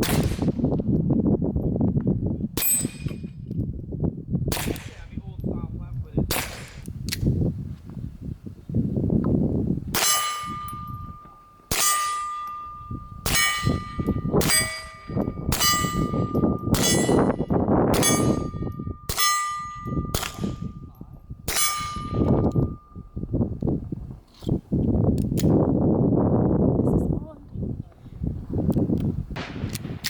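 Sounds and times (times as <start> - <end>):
suppressed gunshots: 0.0 - 0.6, 4.5 - 5.1, 6.3 - 6.9, 29.4 - 30.0
steel target ringing: 10.0 - 23.4.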